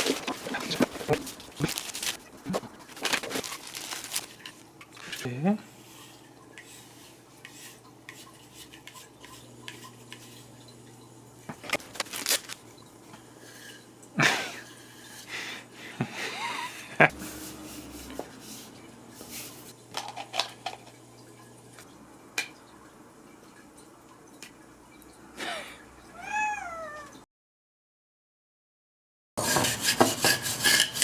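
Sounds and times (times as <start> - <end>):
small hard objects clinking: 0.0 - 5.2.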